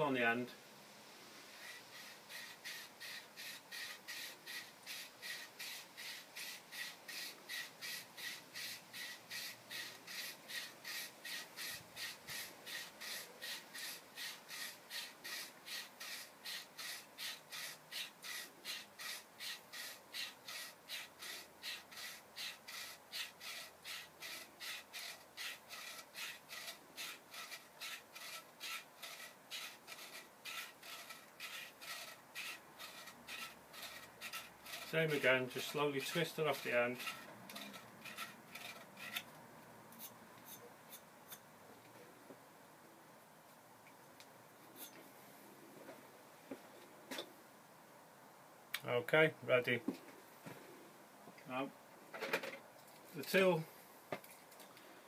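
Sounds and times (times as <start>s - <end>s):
tool rasping on metal pipe: 1.6s - 39.3s.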